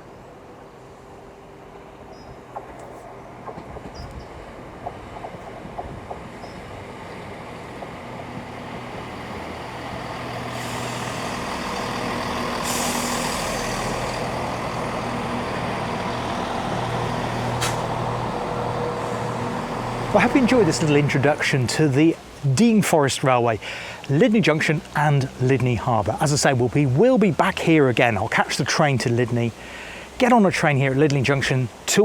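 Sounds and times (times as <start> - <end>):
diesel engine droning: 4.4 - 22.9
air hissing: 10.3 - 16.1, 17.3 - 20.1.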